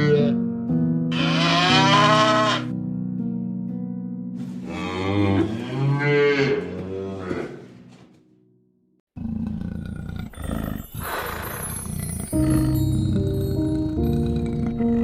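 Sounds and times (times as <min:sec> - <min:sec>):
background music: 0:00.0 - 0:08.6, 0:11.8 - 0:15.0
large animal calling: 0:01.1 - 0:02.7.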